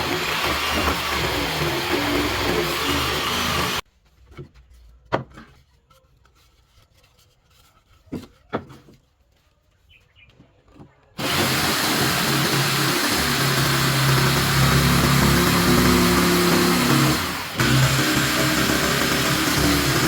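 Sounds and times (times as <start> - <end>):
woodworking power tool running: 0.0 - 3.8, 11.2 - 20.0.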